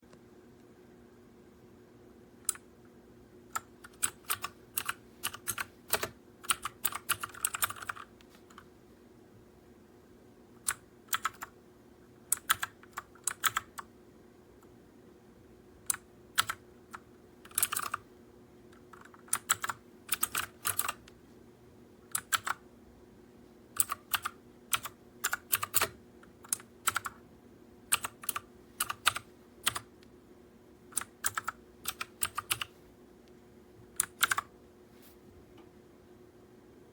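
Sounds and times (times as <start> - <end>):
clicky mechanical keyboard typing: 3.5 - 8.6, 10.6 - 11.6, 12.3 - 13.9, 15.8 - 18.0, 18.7 - 21.1, 22.1 - 22.6, 23.8 - 27.2, 27.9 - 30.0, 30.9 - 32.7, 34.0 - 34.5.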